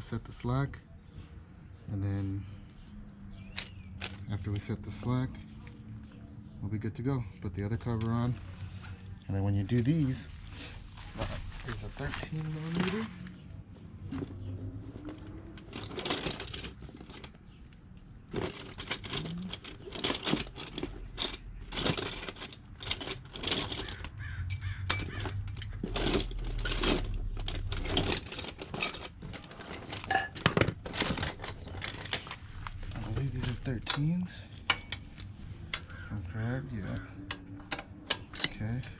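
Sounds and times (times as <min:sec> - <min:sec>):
metal hand tools clinking: 0:15.6 - 0:17.4, 0:18.4 - 0:35.0.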